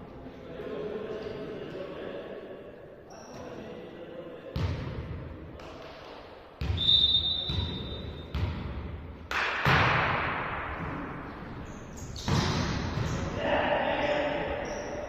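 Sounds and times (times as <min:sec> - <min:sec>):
volleyball hits in sports hall: 0:04.4 - 0:15.0.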